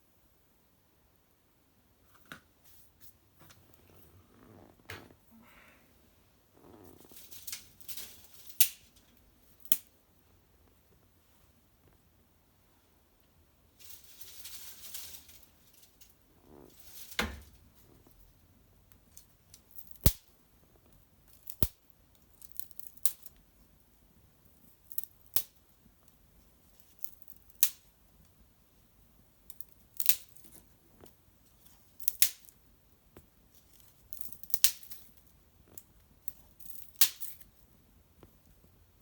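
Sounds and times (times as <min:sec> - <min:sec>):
twig fire crackling: 0:06.9 - 0:09.9, 0:13.7 - 0:18.1, 0:18.9 - 0:20.3, 0:20.9 - 0:23.4, 0:29.5 - 0:32.6.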